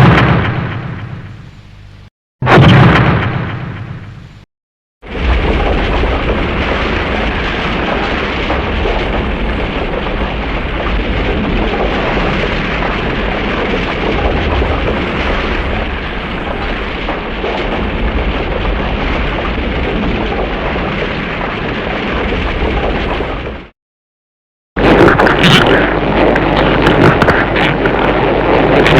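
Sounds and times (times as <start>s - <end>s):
loud rumbling roar: 5.0s - 23.7s, 24.8s - 28.9s.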